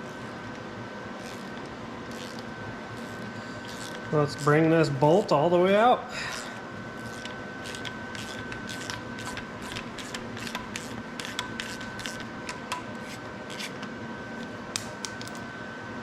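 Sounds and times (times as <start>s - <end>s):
wrench clicking and scraping: 2.1s - 2.4s.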